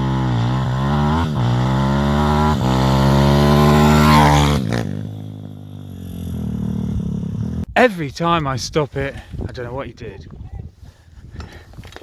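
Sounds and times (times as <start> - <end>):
motorbike engine revving: 0.0 - 7.7.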